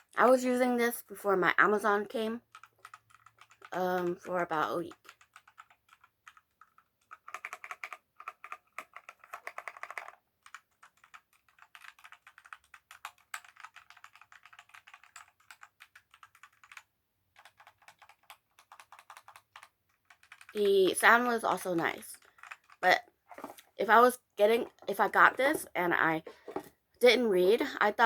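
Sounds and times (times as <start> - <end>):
mechanical keyboard typing: 2.4 - 22.8.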